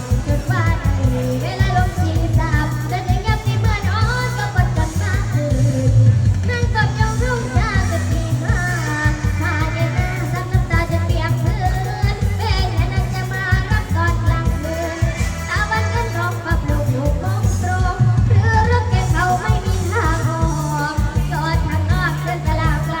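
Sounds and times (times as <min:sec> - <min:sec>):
backing track with bass and beat: 0:00.0 - 0:23.0
girl singing: 0:00.0 - 0:23.0.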